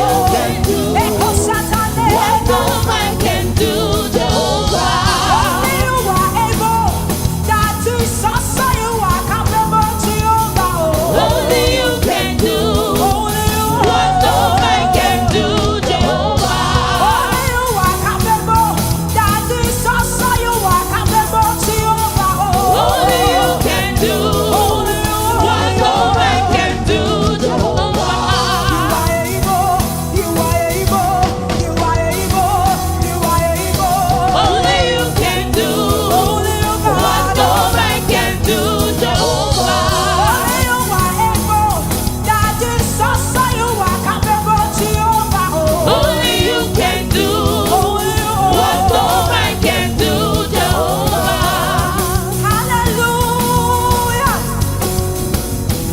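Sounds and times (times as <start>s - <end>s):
gospel singing: 0.0s - 55.9s
loud band accompaniment: 0.0s - 55.9s.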